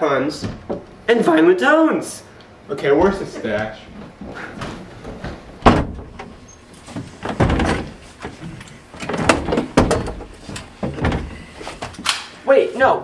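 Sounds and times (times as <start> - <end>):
door knocks and scrapes: 4.6 - 8.4.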